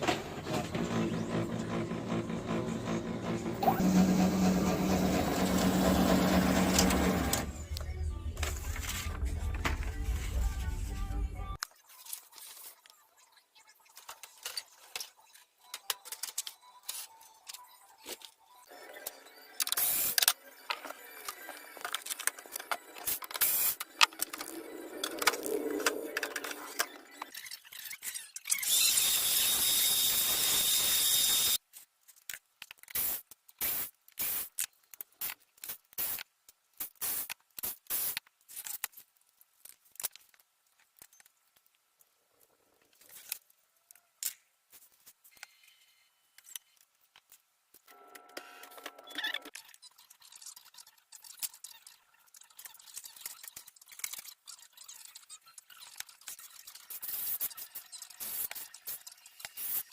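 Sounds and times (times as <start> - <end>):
printer mechanism grinding: 0.0 - 7.8
printer scraping: 0.0 - 7.8.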